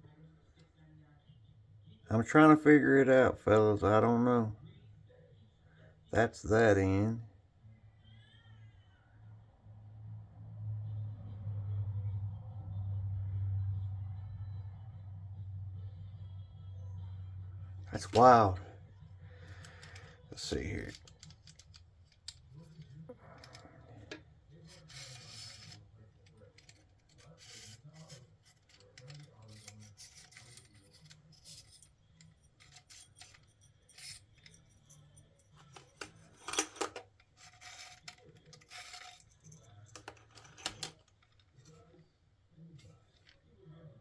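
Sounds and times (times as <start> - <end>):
light clicks and taps of parts: 19.4 - 25.8
short scraping rubs: 23.3 - 25.9, 26.6 - 34.9.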